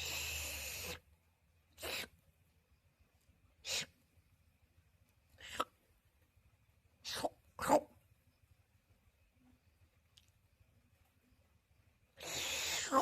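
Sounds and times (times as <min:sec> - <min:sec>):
pet breathy sneeze-like sound: 0:00.0 - 0:01.0, 0:01.8 - 0:02.2, 0:03.6 - 0:04.0, 0:12.2 - 0:13.0.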